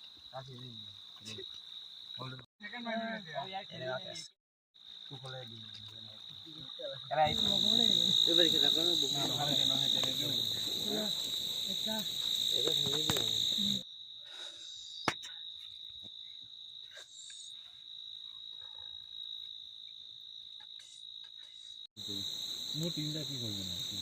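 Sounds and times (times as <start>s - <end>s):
crickets chirring: 0.0s - 24.0s.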